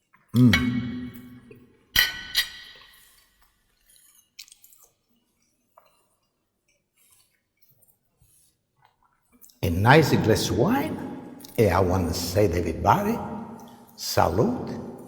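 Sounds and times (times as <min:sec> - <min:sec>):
tableware clinking: 0:00.4 - 0:03.0.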